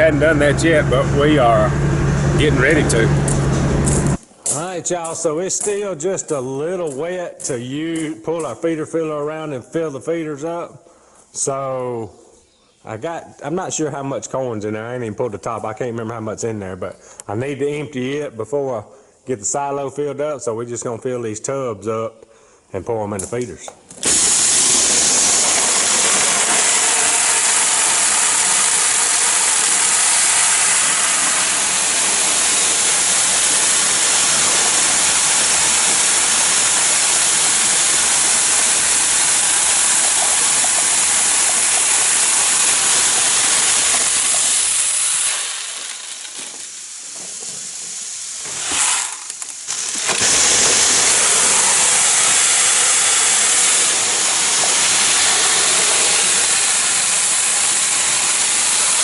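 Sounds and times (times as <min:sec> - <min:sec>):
corn kernels pouring into a tub: 0:24.0 - 0:59.0.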